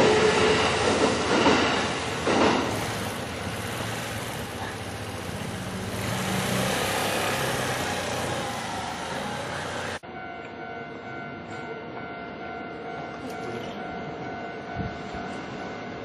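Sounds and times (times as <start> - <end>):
wheel and road noise: 0.0 - 10.1.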